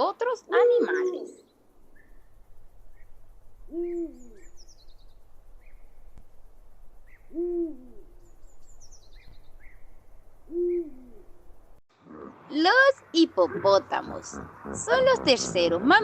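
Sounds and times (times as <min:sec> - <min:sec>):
small birds chirping: 0:00.1 - 0:11.8, 0:12.6 - 0:16.0
owl hooting: 0:00.8 - 0:05.9, 0:07.0 - 0:11.5.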